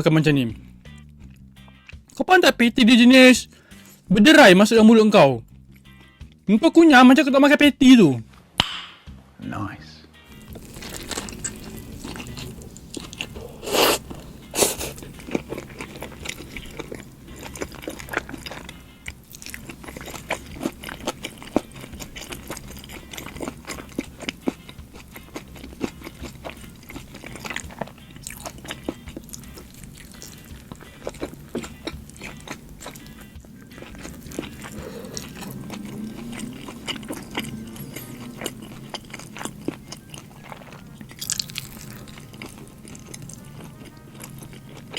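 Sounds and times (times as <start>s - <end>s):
chewing with crunches: 10.3s - 44.9s.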